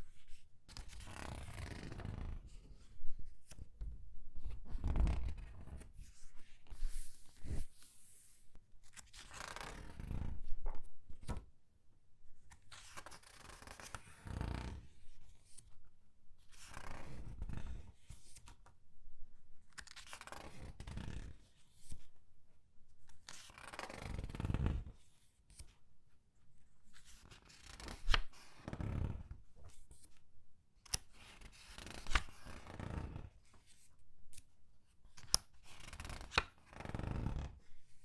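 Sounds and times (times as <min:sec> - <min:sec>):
comic book pages turning: 0:04.9 - 0:10.2, 0:27.0 - 0:28.7, 0:30.9 - 0:32.8, 0:35.1 - 0:37.4.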